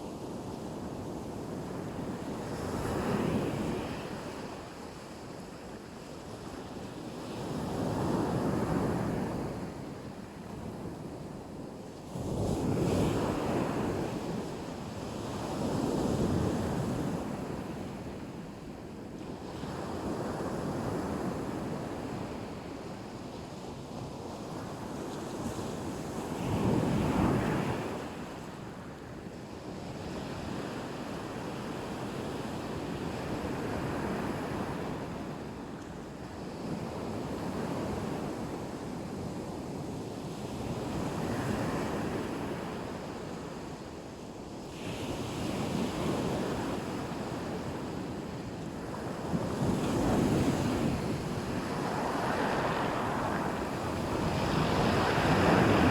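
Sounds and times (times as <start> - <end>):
waves breaking on shore: 49.9 - 55.9.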